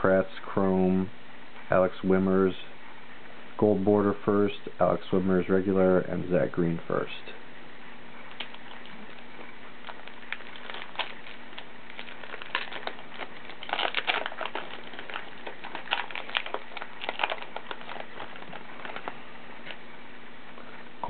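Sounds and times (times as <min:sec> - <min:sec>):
wrapper crinkling and tearing: 0:08.3 - 0:19.8.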